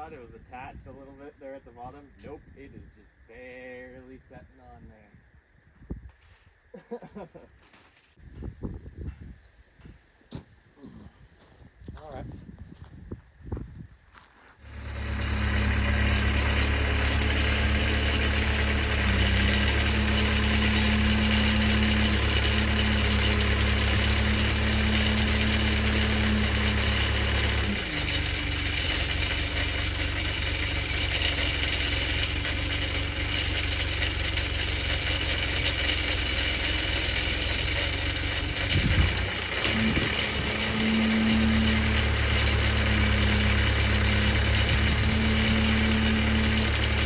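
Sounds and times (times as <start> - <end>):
engine starting and running: 14.6 - 47.0.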